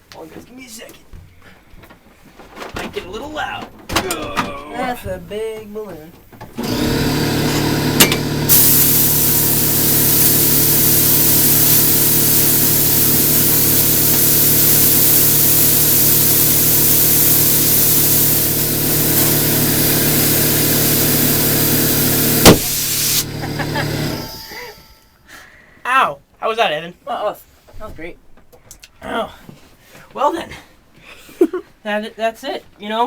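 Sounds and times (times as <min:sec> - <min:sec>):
air compressor humming: 0:06.5 - 0:25.0
compressed air hissing into balloon: 0:08.5 - 0:24.8.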